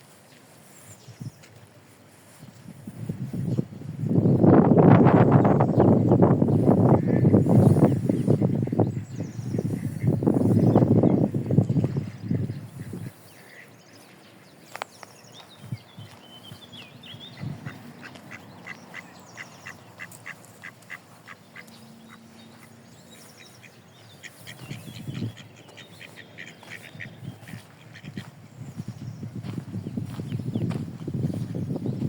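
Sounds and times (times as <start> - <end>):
ducks quacking: 6.8 - 14.1, 16.9 - 28.4.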